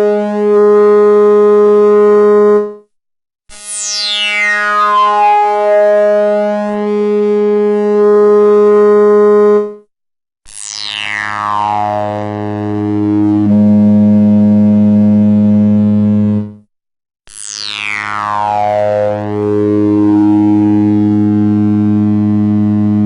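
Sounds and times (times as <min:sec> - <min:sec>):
synthesizer droning with filter sweep: 0:04.4 - 0:07.0, 0:11.1 - 0:16.6, 0:17.9 - 0:23.0.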